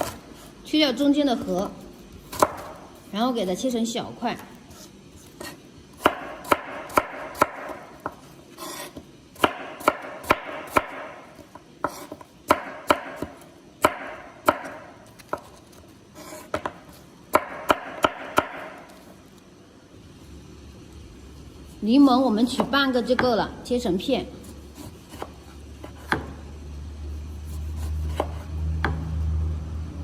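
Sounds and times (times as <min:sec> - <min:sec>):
knife chopping on cutting board: 0:00.0 - 0:00.5, 0:01.4 - 0:02.8, 0:04.7 - 0:19.0, 0:24.4 - 0:26.4, 0:27.4 - 0:29.0.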